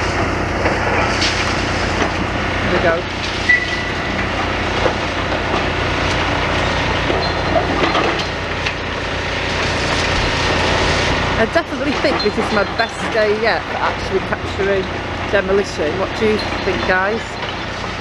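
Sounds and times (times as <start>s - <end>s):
excavator engine rumble: 0.0s - 18.0s
rubble and metal knocks and scrapes: 7.0s - 8.8s.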